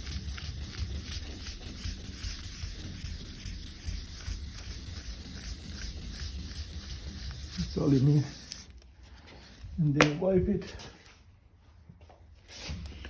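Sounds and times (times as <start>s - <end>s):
sandpaper rubbing: 0.0s - 8.7s.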